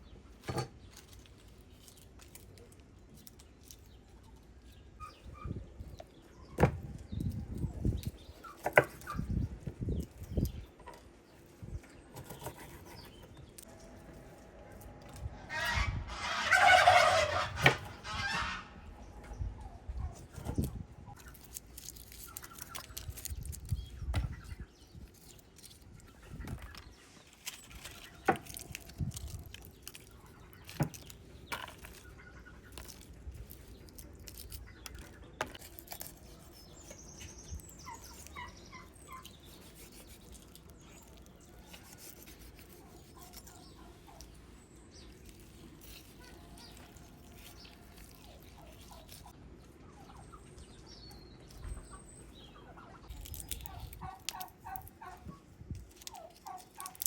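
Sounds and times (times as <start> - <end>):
poultry calling: 15.3 - 19.1.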